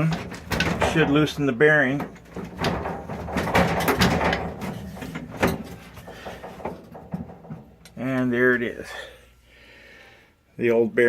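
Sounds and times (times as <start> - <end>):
dryer drum metal knocks and rattles: 0.0 - 8.6.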